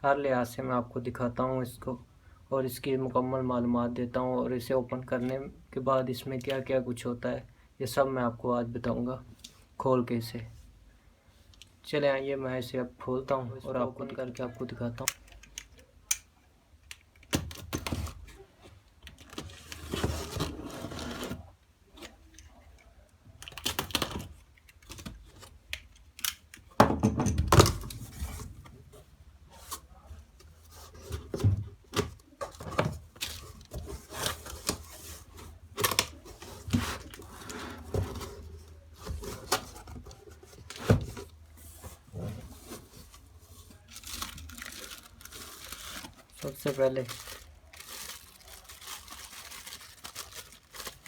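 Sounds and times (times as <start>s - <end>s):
cardboard packaging scraping: 19.3s - 21.5s, 27.8s - 51.0s.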